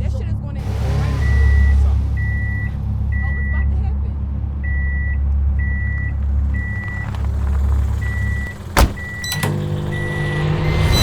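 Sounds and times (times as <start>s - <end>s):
vehicle engine rumbling: 0.0s - 11.0s
reversing alarm beeping: 1.2s - 3.6s, 4.6s - 7.0s, 8.0s - 11.0s.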